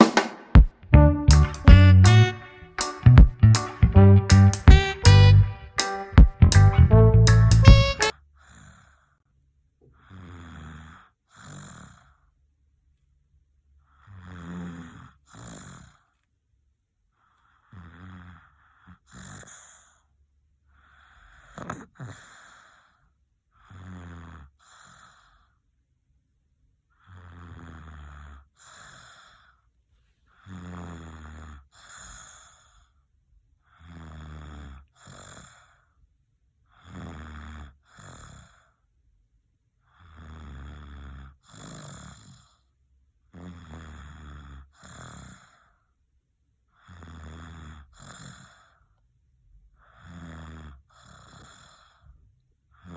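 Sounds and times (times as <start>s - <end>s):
baby snoring and snuffling: 10.0s - 12.2s, 14.0s - 16.0s, 17.6s - 19.8s, 23.6s - 25.4s, 30.4s - 32.7s, 33.8s - 35.8s, 36.8s - 38.6s, 40.0s - 42.6s, 43.3s - 45.6s, 46.8s - 48.8s, 49.9s - 52.0s.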